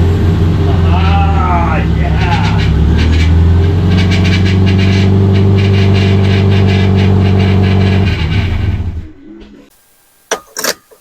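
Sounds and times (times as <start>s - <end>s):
rapid engine ticking: 0.0s - 8.6s
car engine running: 0.0s - 9.1s.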